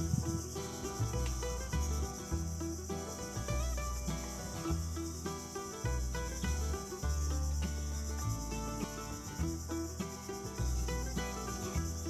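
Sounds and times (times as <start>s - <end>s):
background music with bass: 0.0s - 12.0s
insects chirring: 0.0s - 12.0s.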